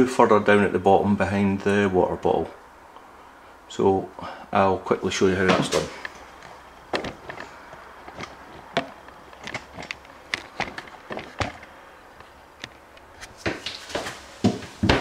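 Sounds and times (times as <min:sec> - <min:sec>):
plastic panels clicking and knocking: 0:05.5 - 0:11.8.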